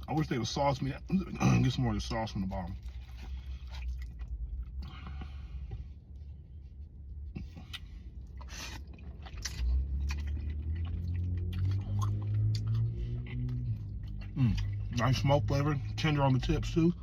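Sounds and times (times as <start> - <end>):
man chewing food: 2.7 - 17.0.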